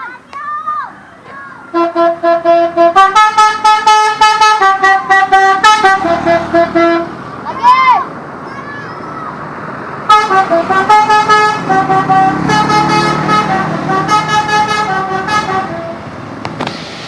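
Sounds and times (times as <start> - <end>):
low engine rumble: 0.2 - 17.0
bus musical horn tune: 1.7 - 7.2, 10.1 - 16.2.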